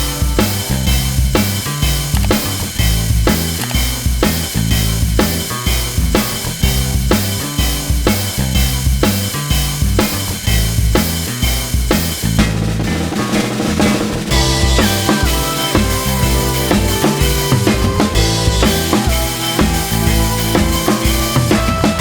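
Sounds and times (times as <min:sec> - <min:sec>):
music with drum beat: 0:00.0 - 0:22.0.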